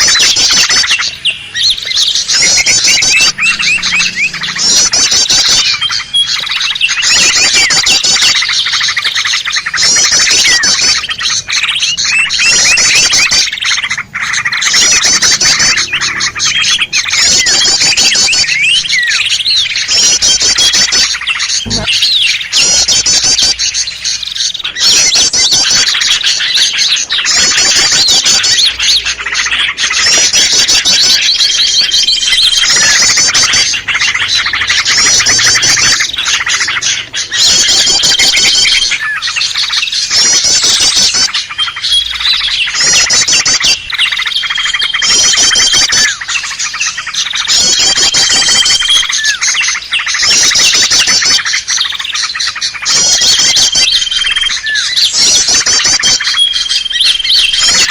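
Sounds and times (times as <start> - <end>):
bird whistles: 0.0 - 57.9
songbird chorus trilling: 0.0 - 57.9.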